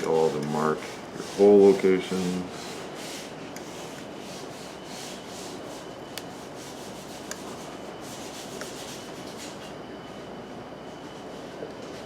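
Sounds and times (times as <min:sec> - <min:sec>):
awl scratching wood: 0:00.0 - 0:09.6.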